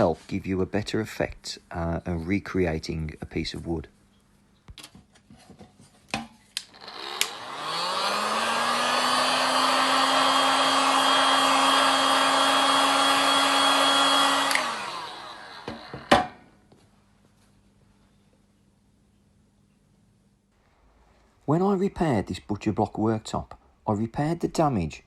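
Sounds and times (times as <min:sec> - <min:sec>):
heat gun blowing whirr: 0:06.6 - 0:16.3.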